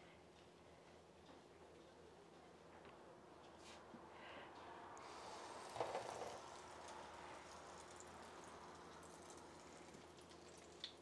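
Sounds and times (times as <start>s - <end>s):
food frying in hot oil: 5.0s - 11.0s.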